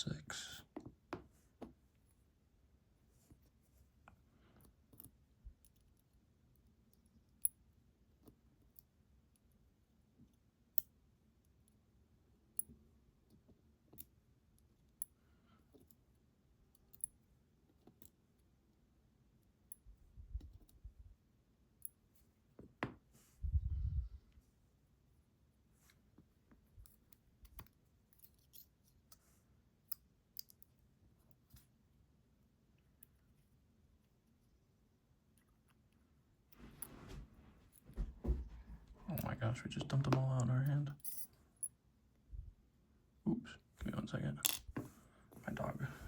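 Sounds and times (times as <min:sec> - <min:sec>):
faint small metal clicks: 0:16.7 - 0:18.2, 0:29.8 - 0:31.7
soft low bumps: 0:36.9 - 0:39.1.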